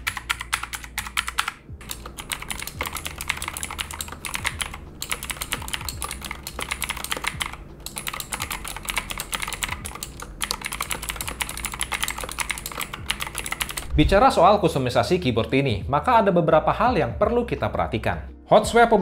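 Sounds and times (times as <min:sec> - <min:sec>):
mechanical keyboard typing clicks: 0:00.0 - 0:13.9.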